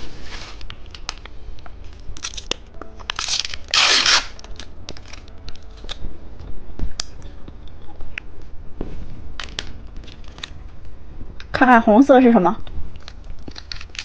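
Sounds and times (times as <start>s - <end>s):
wrapper crinkling: 2.0s - 6.0s, 12.9s - 14.0s
candy wrapper ripping: 2.1s - 6.0s, 13.0s - 14.0s.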